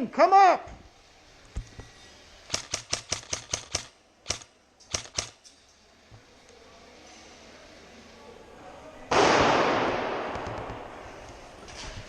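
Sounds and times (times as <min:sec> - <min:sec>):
airsoft gun shots: 0:02.5 - 0:05.4, 0:09.1 - 0:10.9.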